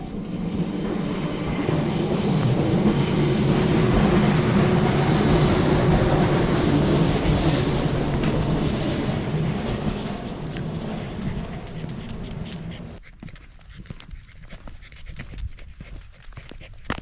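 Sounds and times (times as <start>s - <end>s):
electric train rumbling past: 0.0s - 13.0s
high-pitched ringing tones: 0.0s - 13.0s.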